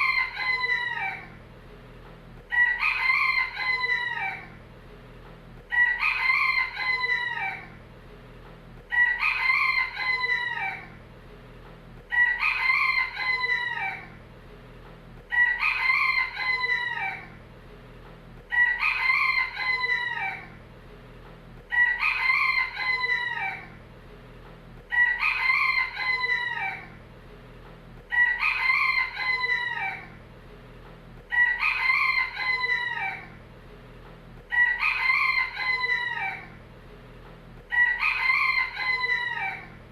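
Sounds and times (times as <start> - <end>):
rooster crowing: 0.0 - 1.4, 2.4 - 4.6, 5.7 - 7.8, 8.9 - 11.0, 12.1 - 14.2, 15.3 - 17.4, 18.5 - 20.6, 21.7 - 23.8, 24.9 - 27.0, 28.1 - 30.2, 31.2 - 33.4, 34.4 - 36.6, 37.6 - 39.9.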